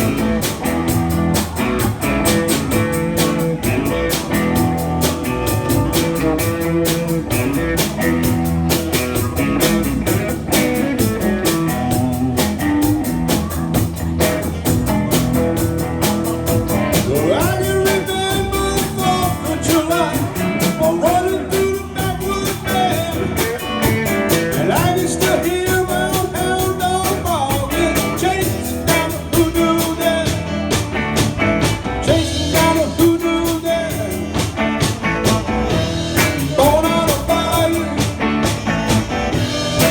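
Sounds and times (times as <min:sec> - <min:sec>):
live blues-rock band: 0:00.0 - 0:39.9
person singing: 0:16.2 - 0:39.9.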